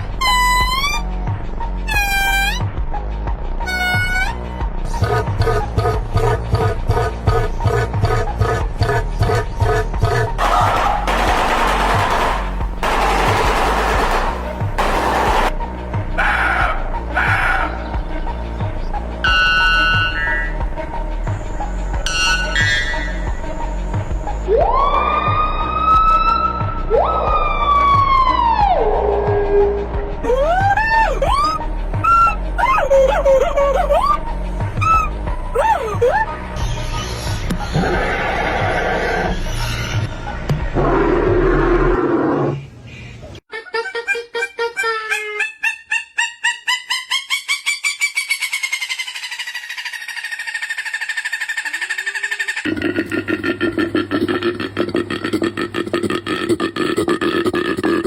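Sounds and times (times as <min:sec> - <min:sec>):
animal call trilling: 0:00.0 - 0:01.0, 0:01.9 - 0:02.7, 0:03.7 - 0:04.4, 0:30.2 - 0:34.2, 0:34.8 - 0:36.4, 0:43.8 - 0:52.7
animal howls: 0:30.2 - 0:36.4.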